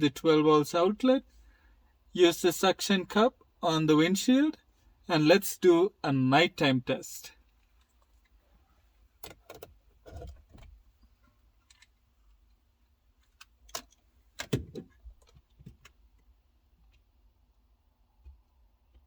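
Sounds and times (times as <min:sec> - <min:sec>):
dash cam mount clicks and knocks: 0:13.4 - 0:16.0.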